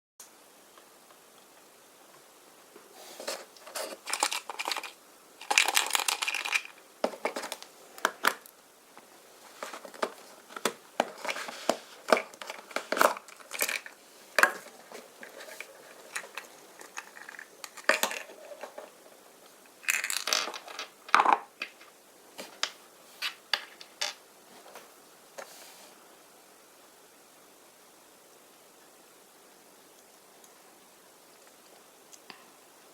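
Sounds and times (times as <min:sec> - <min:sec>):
foil wrapper crinkling and tearing: 0:03.7 - 0:06.8.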